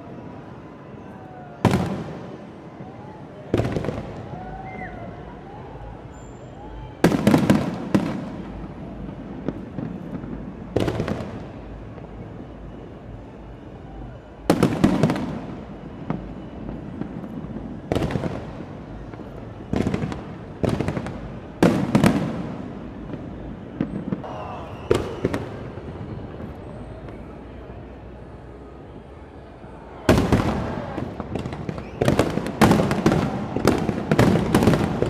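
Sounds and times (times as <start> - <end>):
fireworks booming: 1.6 - 2.6, 3.5 - 4.9, 7.0 - 12.8, 14.4 - 27.5, 30.0 - 35.0.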